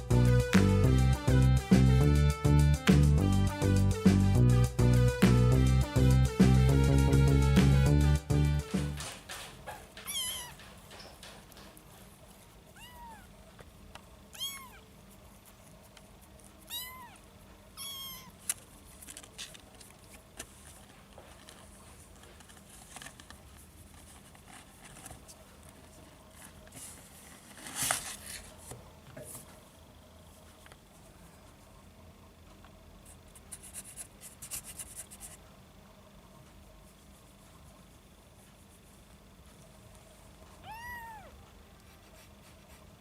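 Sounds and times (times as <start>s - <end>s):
kitten mewing: 10.0s - 10.6s, 12.7s - 13.3s, 14.3s - 14.9s, 16.6s - 18.4s, 40.6s - 41.4s.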